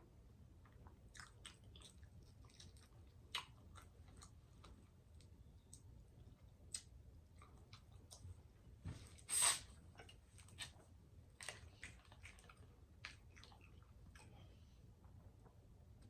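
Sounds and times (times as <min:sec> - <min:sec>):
person chewing: 0:00.8 - 0:05.8, 0:11.4 - 0:14.5.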